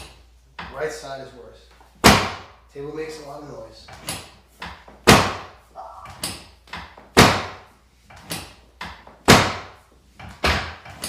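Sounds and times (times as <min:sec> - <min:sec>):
adjustment table slamming: 0:06.0 - 0:11.0.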